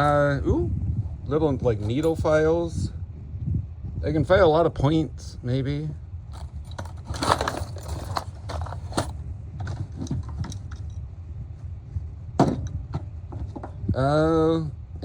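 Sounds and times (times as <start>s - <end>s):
metal tools clinking and rattling: 6.3s - 11.0s.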